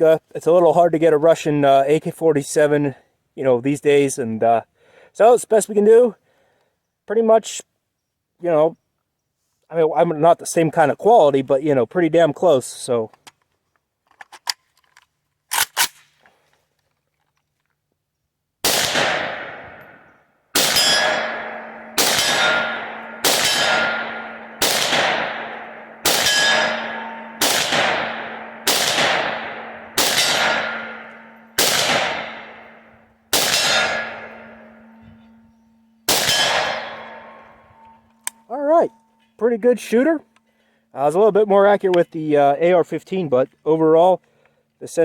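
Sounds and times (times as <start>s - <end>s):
rifle shots: 18.6s - 35.0s, 36.1s - 37.6s
low ringing tone: 25.8s - 27.4s, 30.6s - 31.6s, 33.8s - 36.1s, 37.0s - 39.4s.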